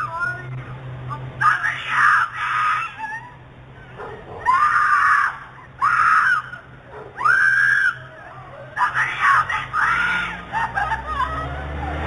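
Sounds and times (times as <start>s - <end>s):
woman screaming: 1.4s - 3.4s, 4.4s - 12.0s.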